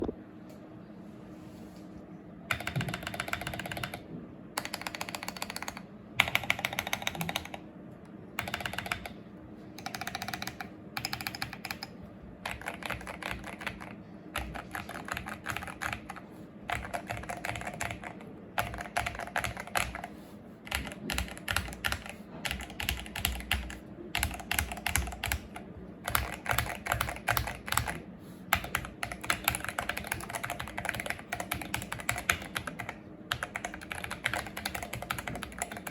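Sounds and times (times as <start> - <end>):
mechanical keyboard typing: 2.5 - 7.7, 8.3 - 9.2, 9.8 - 35.9.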